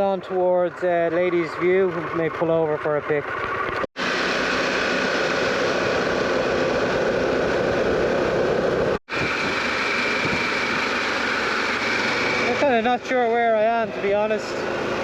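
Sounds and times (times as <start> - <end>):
motorcycle engine running: 0.0 - 15.0
wind and road noise: 0.0 - 15.0.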